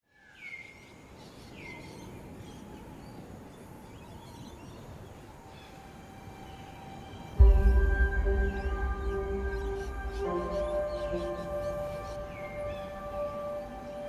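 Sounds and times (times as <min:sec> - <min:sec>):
faint steady tones: 0:02.0 - 0:14.0
low background rumble: 0:07.4 - 0:13.9.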